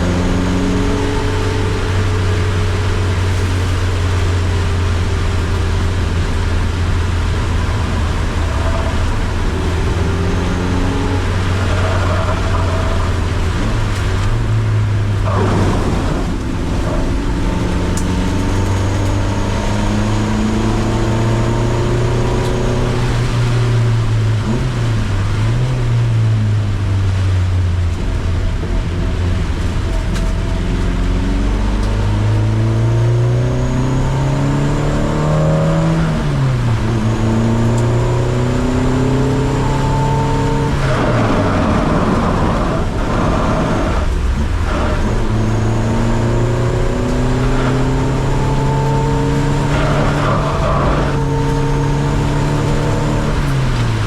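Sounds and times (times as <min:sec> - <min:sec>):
heavy rain and tyre spray: 0:00.0 - 0:32.8, 0:35.4 - 0:54.0
racing car engine accelerating: 0:00.0 - 0:54.0.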